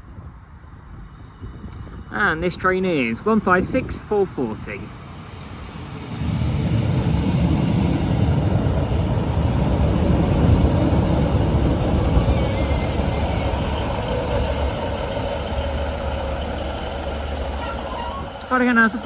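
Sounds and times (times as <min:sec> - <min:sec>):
train diesel engines rumbling: 0:02.7 - 0:19.0.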